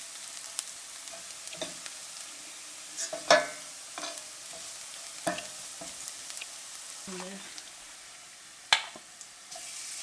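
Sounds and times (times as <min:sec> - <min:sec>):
onions sizzling in hot oil: 0:00.0 - 0:10.0
spoon knocking against pan: 0:03.1 - 0:06.0.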